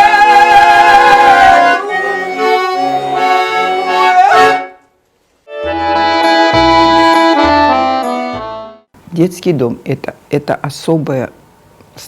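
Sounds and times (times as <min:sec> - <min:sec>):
button accordion playing folk song: 0:00.0 - 0:04.8, 0:05.5 - 0:08.9.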